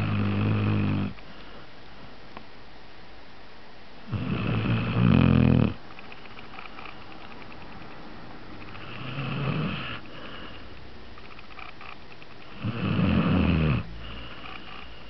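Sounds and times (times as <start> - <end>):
person snoring: 0.0 - 1.2, 4.1 - 5.8, 8.7 - 10.7, 12.5 - 14.9.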